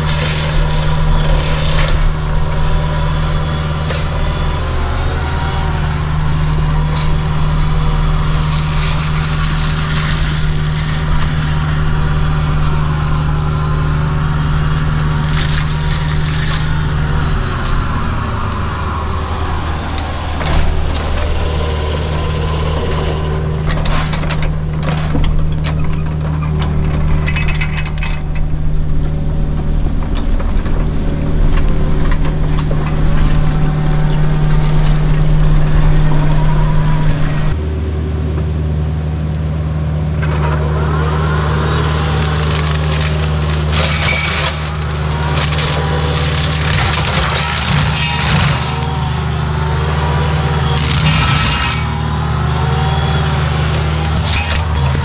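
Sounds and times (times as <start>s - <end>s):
excavator diesel engine running: 0.0s - 55.0s
sharp knocks and cracks: 42.2s - 49.0s.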